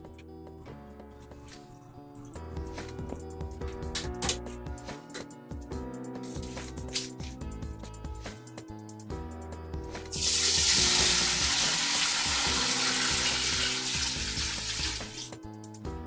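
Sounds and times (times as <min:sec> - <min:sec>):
background music: 0:00.0 - 0:16.0
water running: 0:10.1 - 0:15.4.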